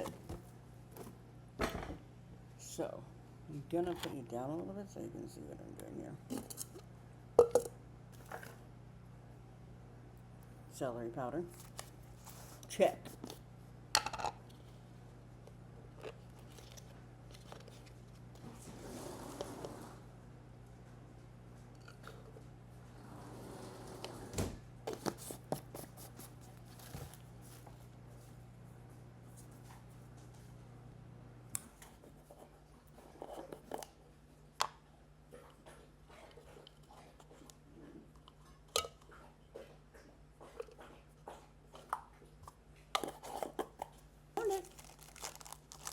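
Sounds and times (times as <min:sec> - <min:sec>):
packet crackling and clicking: 0:44.4 - 0:45.9.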